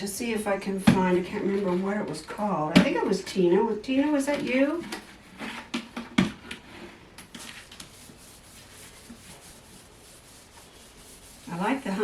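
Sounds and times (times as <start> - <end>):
faint rubbing and rustling: 1.0 - 2.6, 4.0 - 12.0.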